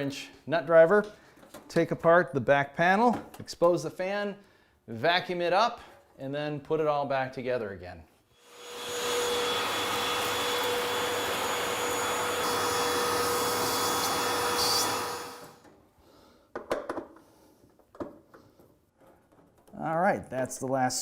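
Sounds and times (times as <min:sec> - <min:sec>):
vacuum cleaner whining: 0:08.4 - 0:15.7.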